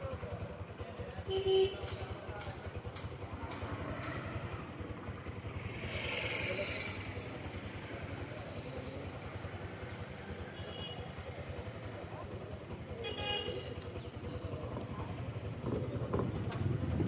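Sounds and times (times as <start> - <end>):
hiss: 5.7 - 9.1.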